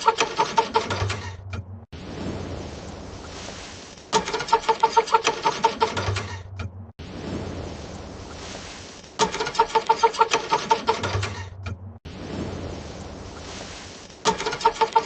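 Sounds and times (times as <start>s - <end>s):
car engine cranking: 0.0s - 1.9s, 4.1s - 6.9s, 9.2s - 12.0s, 14.2s - 15.0s.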